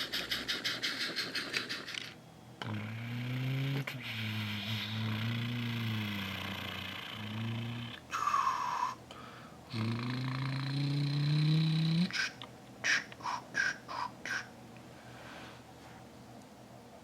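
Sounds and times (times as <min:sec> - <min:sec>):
person imitating engine with mouth: 0:00.0 - 0:09.0, 0:09.7 - 0:14.6
short sharp mouth sounds: 0:11.9 - 0:14.5.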